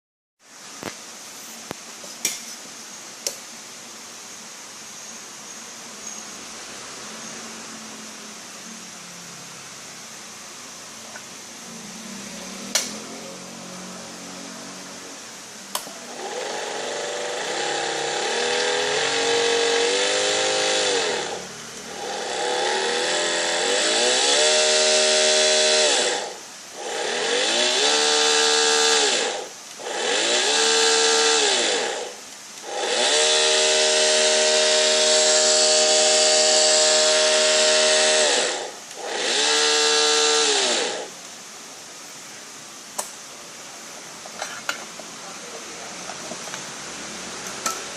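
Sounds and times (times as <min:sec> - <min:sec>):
harsh hiss: 0:00.4 - 0:47.9
electric motor whining: 0:15.8 - 0:41.1.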